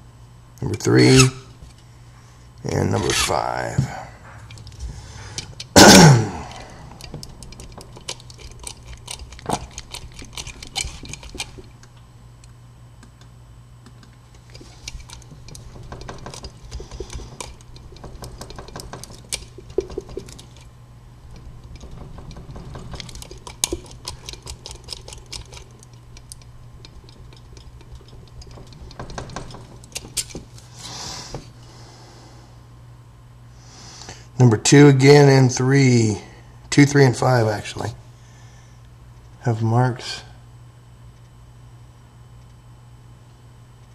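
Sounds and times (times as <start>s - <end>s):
metallic clicks and scrapes in lock: 7.0s - 11.8s, 14.3s - 20.7s, 21.4s - 30.5s.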